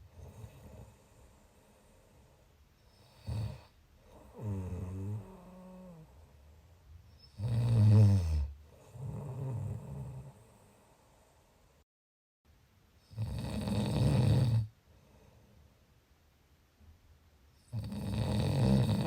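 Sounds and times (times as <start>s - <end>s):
person snoring: 3.0s - 6.2s, 7.4s - 10.6s, 13.1s - 14.7s, 17.7s - 19.0s.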